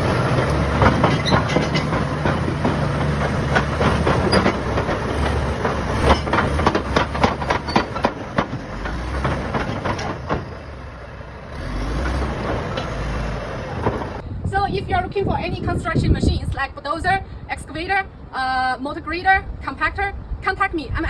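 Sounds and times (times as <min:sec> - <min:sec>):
steel tracks clattering: 0:00.0 - 0:14.2
diesel engine rumbling: 0:00.0 - 0:14.4.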